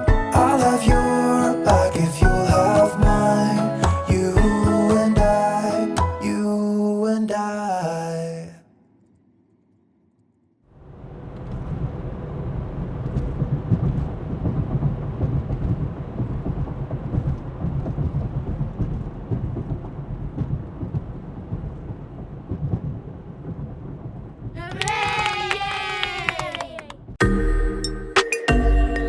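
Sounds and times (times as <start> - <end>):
wind buffeting microphone: 11.1 - 24.6.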